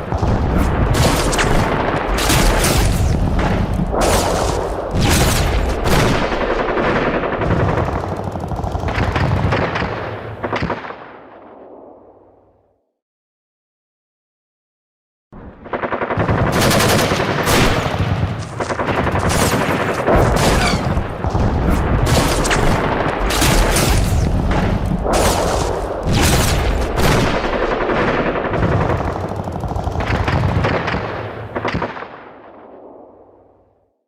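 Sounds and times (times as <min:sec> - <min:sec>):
gunfire: 0:00.0 - 0:11.7, 0:15.6 - 0:33.2
machine-gun bursts: 0:16.4 - 0:21.2.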